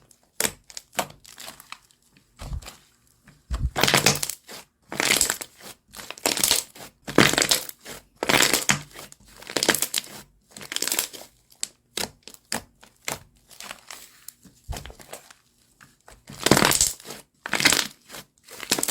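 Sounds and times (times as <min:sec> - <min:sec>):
slime squishing by hand: 0:00.6 - 0:11.4, 0:12.1 - 0:15.4.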